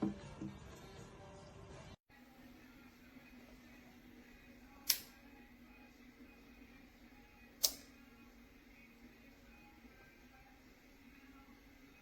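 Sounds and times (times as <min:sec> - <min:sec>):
faint steady hum: 0:02.1 - 0:12.0
sharp click: 0:04.8 - 0:05.2, 0:07.6 - 0:07.9.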